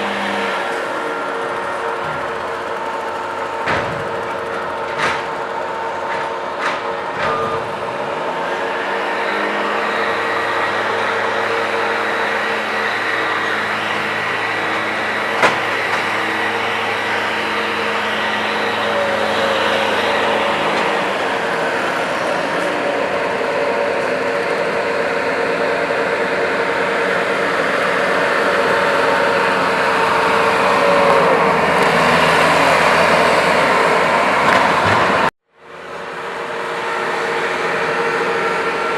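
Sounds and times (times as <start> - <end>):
skid steer loader engine running: 0.0 - 38.9.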